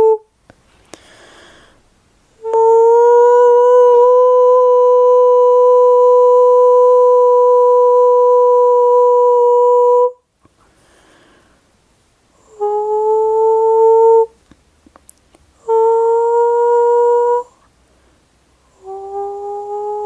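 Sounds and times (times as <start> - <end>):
woman singing long held notes: 0.0 - 0.3, 2.4 - 10.2, 12.4 - 14.4, 15.6 - 17.6, 18.7 - 20.0.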